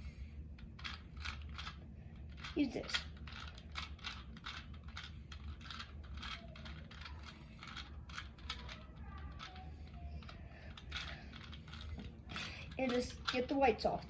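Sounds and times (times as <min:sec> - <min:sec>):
low steady hum: 0:00.0 - 0:14.0
plastic puzzle cube clicking: 0:00.8 - 0:09.6.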